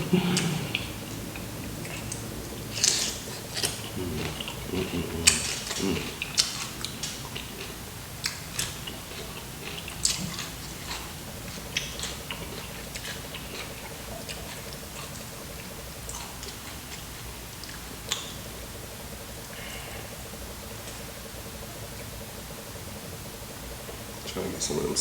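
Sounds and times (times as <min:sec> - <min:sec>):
person chewing cucumber: 0:00.0 - 0:23.2.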